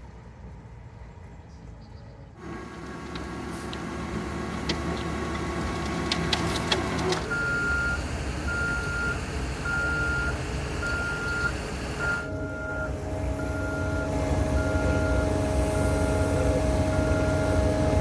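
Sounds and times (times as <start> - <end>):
diesel engine running: 2.4 - 18.0
reversing alarm beeps: 7.3 - 18.0.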